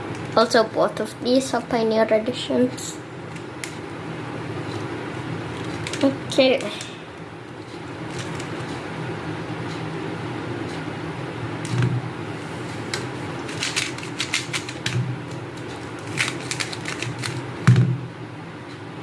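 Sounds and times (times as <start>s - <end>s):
steady low hum: 0.0s - 19.0s
puzzle cube plastic clicks: 12.9s - 17.4s.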